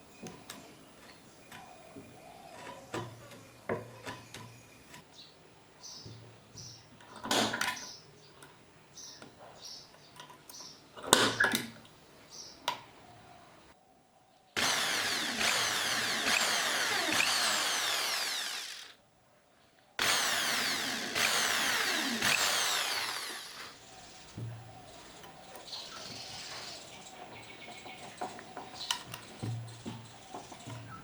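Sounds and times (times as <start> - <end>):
power tool running: 14.6 - 19.0, 20.0 - 23.9.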